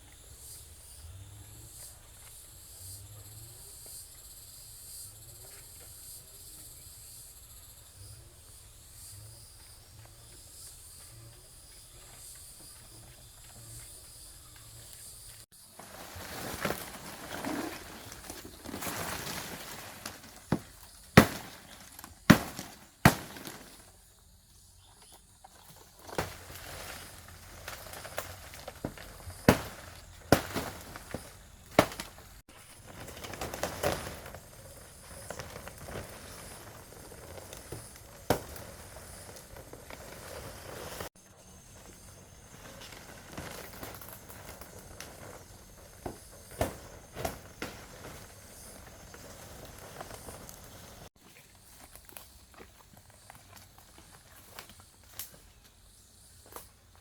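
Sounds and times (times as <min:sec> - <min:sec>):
leaves rustling: 0:15.0 - 0:24.8, 0:25.4 - 0:55.6
blade chopping palm fronds: 0:15.8 - 0:24.0, 0:25.7 - 0:41.1, 0:41.9 - 0:51.1.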